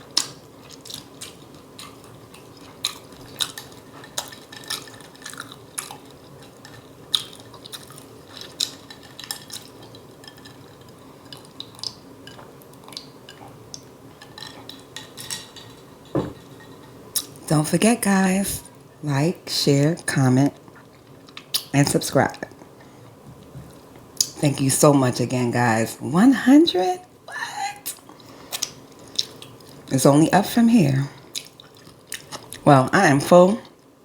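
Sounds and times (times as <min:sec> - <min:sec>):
chewing clicks: 0:00.1 - 0:10.6, 0:11.2 - 0:15.4, 0:28.2 - 0:29.8, 0:31.4 - 0:32.6.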